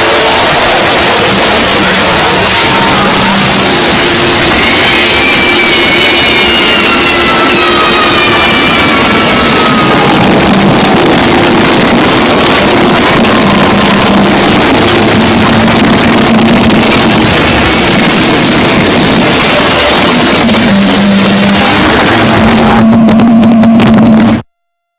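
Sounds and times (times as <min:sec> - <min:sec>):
falling whine: 0:00.0 - 0:24.5
harsh roar of noise: 0:00.0 - 0:24.5
low drone: 0:00.0 - 0:24.5.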